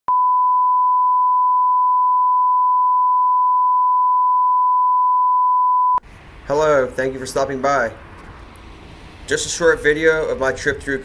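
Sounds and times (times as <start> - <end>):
steady electronic test tone: 0.1 - 6.0.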